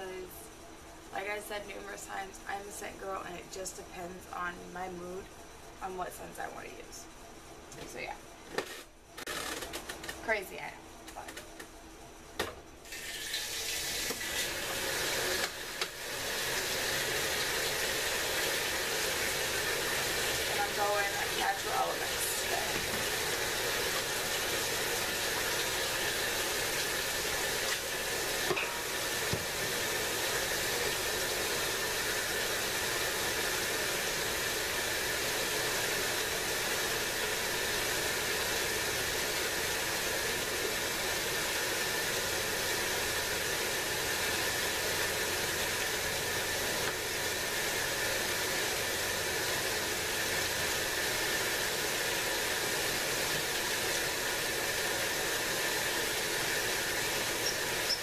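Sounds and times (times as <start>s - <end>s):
water rushing into washing machine: 12.8s - 58.0s.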